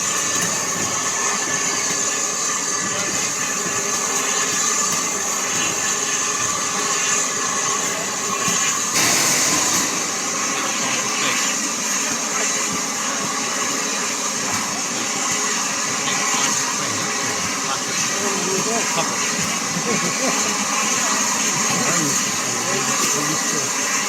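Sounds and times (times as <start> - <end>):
sharp rush of steam: 0.0 - 24.0
steam locomotive hissing: 0.0 - 24.0.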